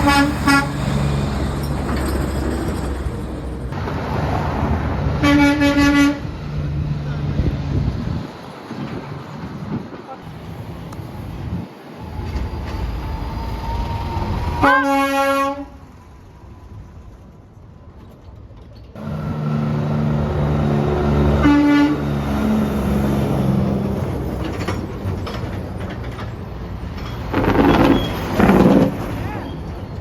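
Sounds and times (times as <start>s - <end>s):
truck air horn blasting: 0.0s - 1.0s, 5.2s - 6.3s, 14.6s - 15.8s, 20.8s - 22.2s
diesel truck engine passing: 0.0s - 18.0s, 19.0s - 30.0s.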